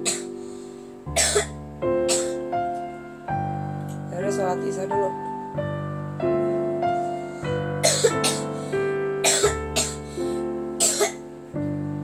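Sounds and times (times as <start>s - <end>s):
child coughing: 0.0s - 0.3s, 1.2s - 2.4s, 7.8s - 8.4s, 9.2s - 10.0s, 10.8s - 11.2s
soft piano music: 0.0s - 12.0s.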